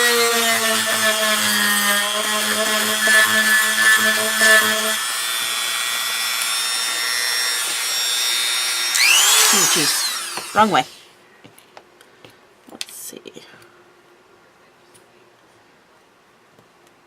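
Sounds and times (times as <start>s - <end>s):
power drill running: 0.0s - 11.1s.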